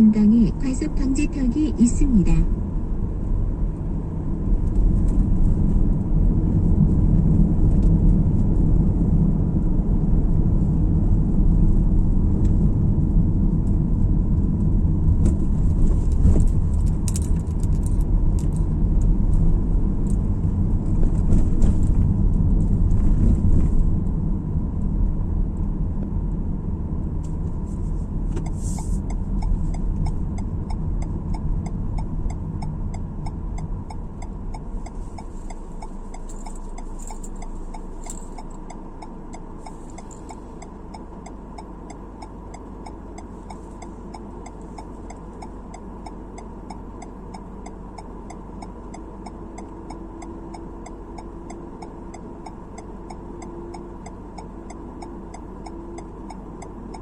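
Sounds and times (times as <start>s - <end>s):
car driving rumble: 0.0s - 57.0s
regular light ticking: 28.4s - 57.0s.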